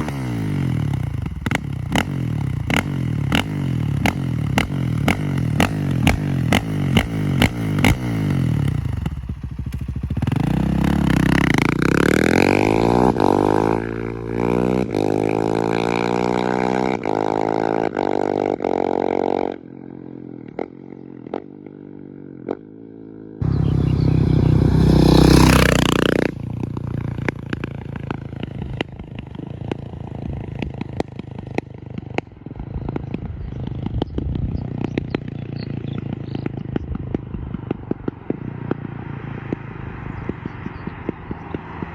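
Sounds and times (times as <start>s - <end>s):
motorcycle engine revving: 0.0s - 41.9s
motorcycle passing by: 0.0s - 41.9s.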